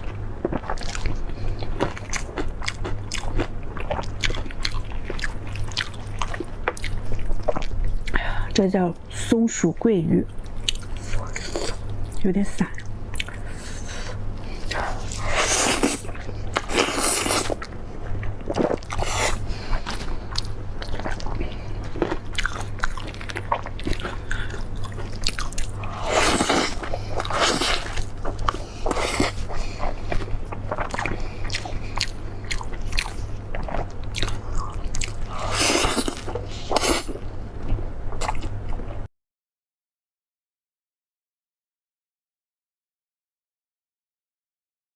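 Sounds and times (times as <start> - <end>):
crunchy chewing of fried fish: 0.0 - 8.3, 10.4 - 12.2, 12.8 - 39.1.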